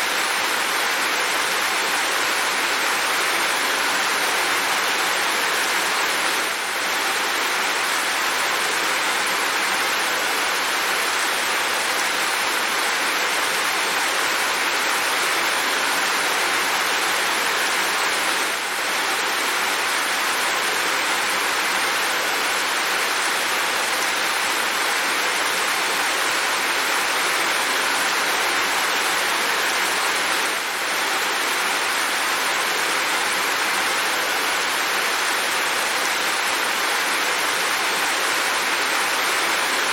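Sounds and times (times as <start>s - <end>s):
heavy rain falling: 0.0s - 39.9s.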